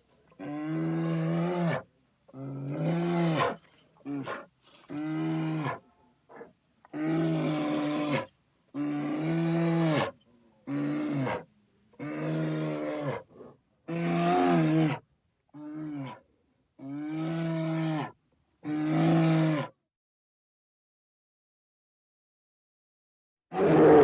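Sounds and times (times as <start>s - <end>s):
bear roaring: 23.5s - 24.0s.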